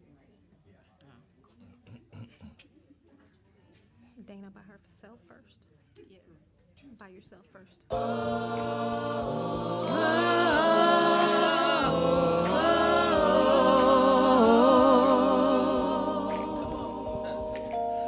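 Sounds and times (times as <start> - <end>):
sustained low notes: 7.9 - 17.8
woman singing wordless notes: 7.9 - 18.0.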